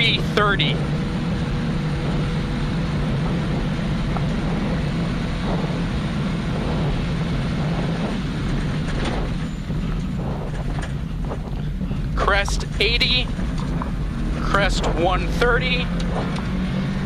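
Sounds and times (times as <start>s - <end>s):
gravel and wind rush: 0.0s - 17.0s
rally car engine running hard: 0.0s - 17.0s.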